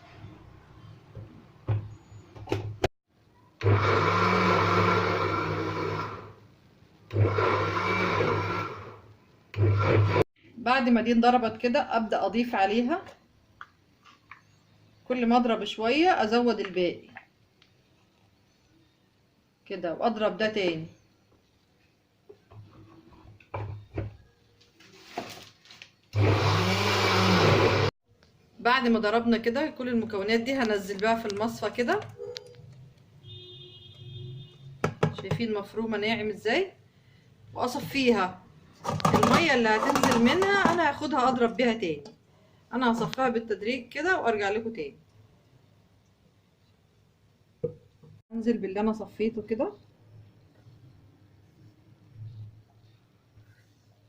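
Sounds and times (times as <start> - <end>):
electric blender chopping: 3.6 - 6.3, 7.1 - 8.9, 9.6 - 10.2, 26.2 - 27.9.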